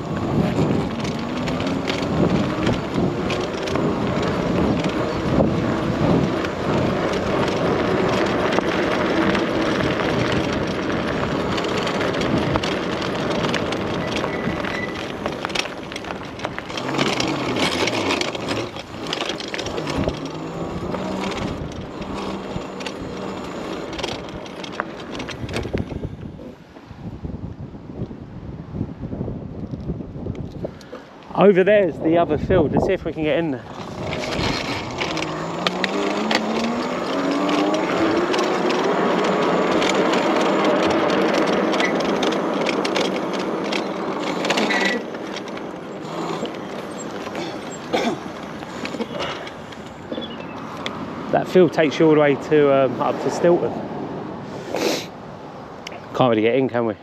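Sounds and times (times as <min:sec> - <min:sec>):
wind and tyre noise: 0:00.0 - 0:57.0
small knocks and rattles: 0:00.1 - 0:26.0, 0:33.8 - 0:51.0.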